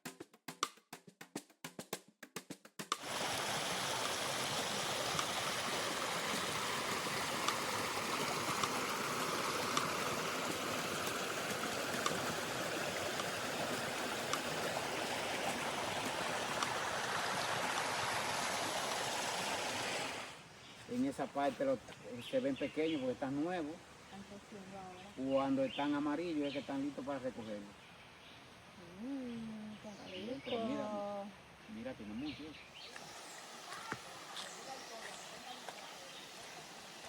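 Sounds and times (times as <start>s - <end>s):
rushing water: 2.9s - 27.5s, 32.0s - 37.0s.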